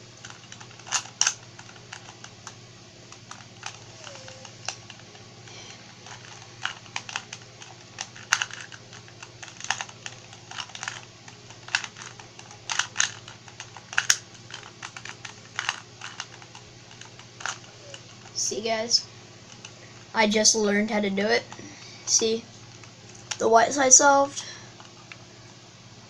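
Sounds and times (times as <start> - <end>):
puzzle cube clicking: 0.2 - 18.4.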